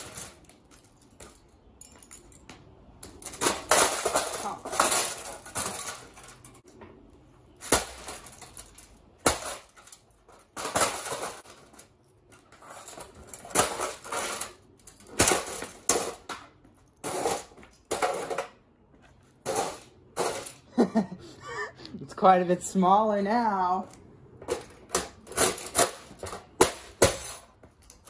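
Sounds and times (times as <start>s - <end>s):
hard blows smashing electronics: 3.0s - 6.7s, 7.4s - 11.9s, 12.5s - 18.6s, 24.4s - 28.0s.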